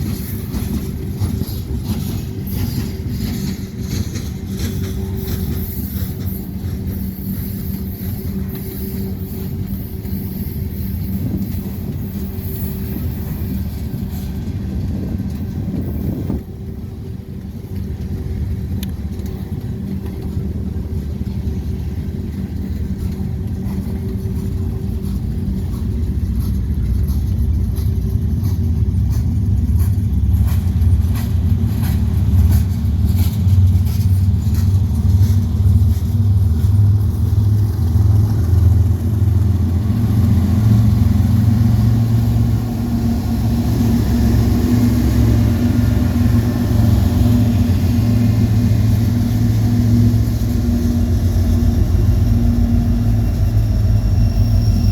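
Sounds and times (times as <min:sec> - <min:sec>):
freight train rumbling: 0:00.0 - 0:54.9.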